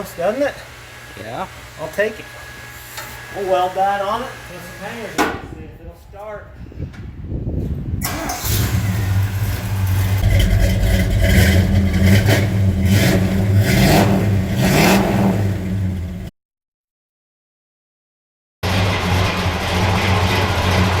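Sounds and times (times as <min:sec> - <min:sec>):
pickup engine revving: 0:08.0 - 0:16.3, 0:18.6 - 0:21.0.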